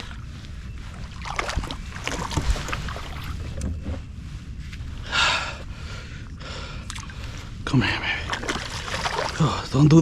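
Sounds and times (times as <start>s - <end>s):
water splashing and sloshing: 0.0s - 4.0s, 6.3s - 10.0s
wind rumbling on microphone: 0.0s - 10.0s.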